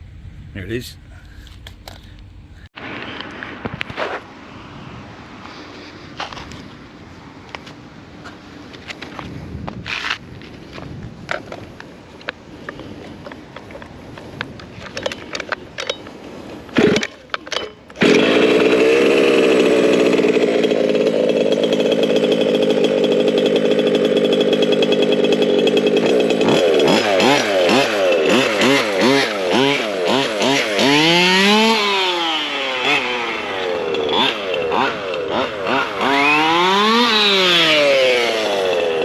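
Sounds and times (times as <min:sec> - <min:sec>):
two-stroke engine revving: 0:16.7 - 0:17.2, 0:18.0 - 0:39.0.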